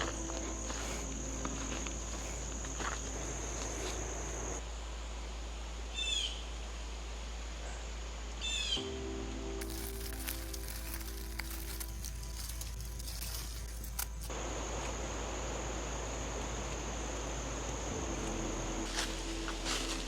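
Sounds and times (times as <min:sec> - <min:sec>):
low music: 0:00.0 - 0:04.4, 0:08.8 - 0:14.3, 0:16.6 - 0:20.0
insect trilling: 0:00.0 - 0:04.6, 0:09.6 - 0:20.0.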